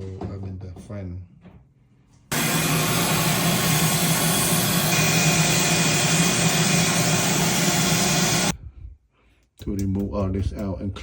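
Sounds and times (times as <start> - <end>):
electric cleaning tool running: 2.3 - 8.5.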